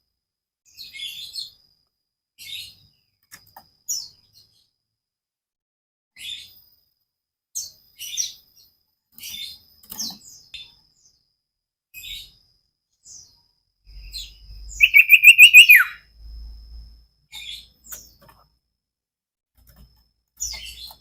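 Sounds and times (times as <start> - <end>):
bird chirps and whistles: 14.1 - 16.0
fast rising bird trill: 14.7 - 16.0.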